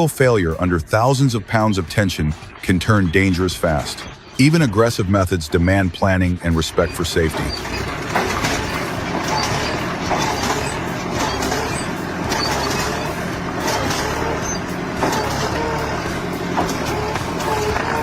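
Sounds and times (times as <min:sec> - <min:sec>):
diesel engine running under load: 0:00.0 - 0:18.0
short squeaky tones: 0:06.8 - 0:18.0
machinery knocks: 0:07.3 - 0:18.0.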